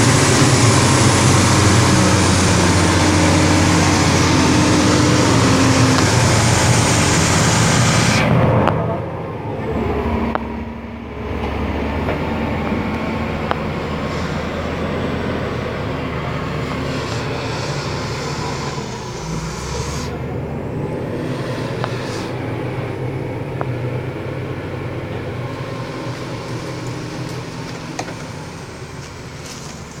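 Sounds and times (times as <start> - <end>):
heavy vehicle engine running: 0.0 - 30.0.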